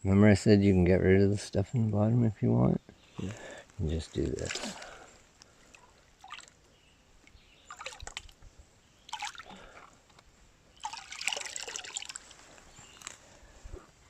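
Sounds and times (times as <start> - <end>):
water splashing in gravel pan: 10.8 - 12.3.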